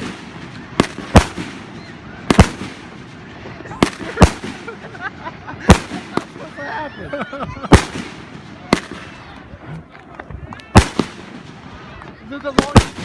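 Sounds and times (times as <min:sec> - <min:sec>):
fireworks banging: 0:00.0 - 0:06.7, 0:07.4 - 0:13.0.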